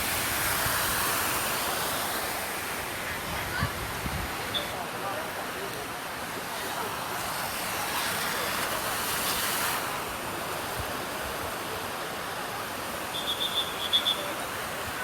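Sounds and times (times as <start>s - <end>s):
flowing and splashing water: 0.0s - 15.0s.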